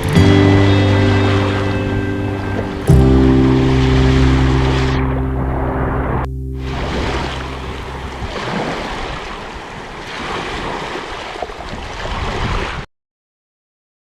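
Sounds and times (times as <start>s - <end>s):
low held music tone: 0.0s - 8.4s
sea waves surf: 0.0s - 12.8s.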